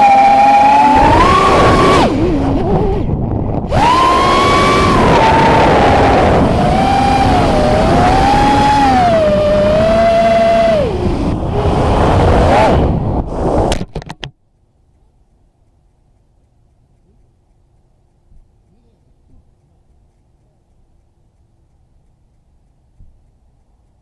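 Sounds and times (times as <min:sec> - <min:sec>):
quadcopter motors whining: 0:00.0 - 0:13.0.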